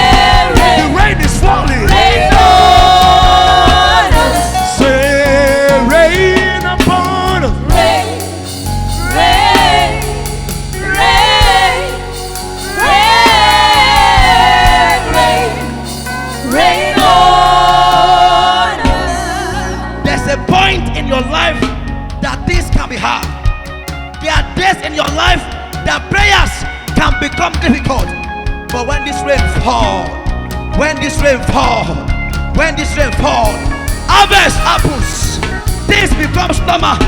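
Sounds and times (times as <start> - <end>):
voices singing held notes: 0.0 - 6.6, 7.3 - 20.6
low instrumental backing: 0.0 - 37.0.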